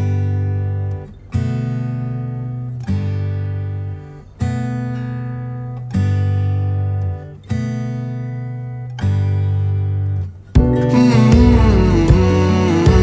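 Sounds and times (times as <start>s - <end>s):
strummed guitar chords: 0.0s - 13.0s.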